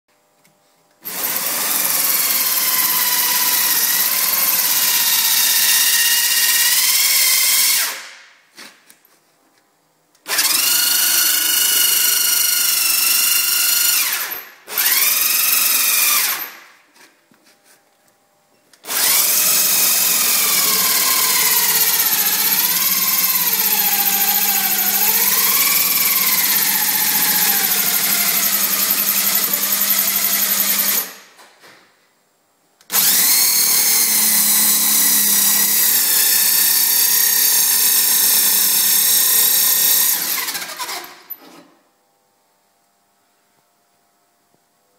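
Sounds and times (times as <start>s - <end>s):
electric drill cutting sheet metal: 1.0s - 8.2s, 10.2s - 16.7s, 18.8s - 31.3s, 32.9s - 41.7s.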